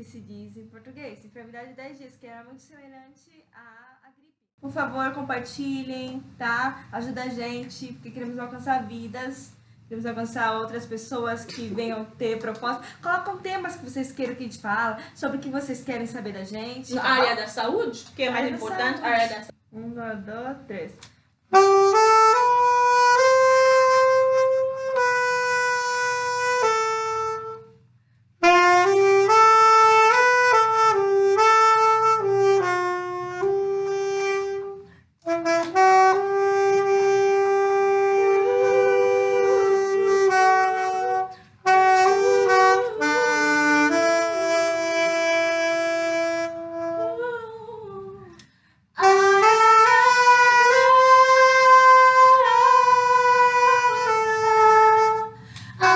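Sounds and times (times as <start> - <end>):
solo saxophone melody: 21.5 - 27.8, 28.4 - 48.2, 49.0 - 55.9.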